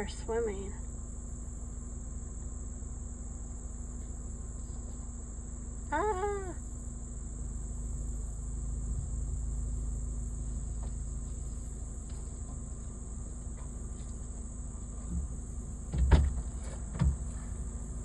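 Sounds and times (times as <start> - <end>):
high insect drone: 0.0 - 18.0
low rumble: 7.5 - 18.0
short knocks: 13.6 - 17.7.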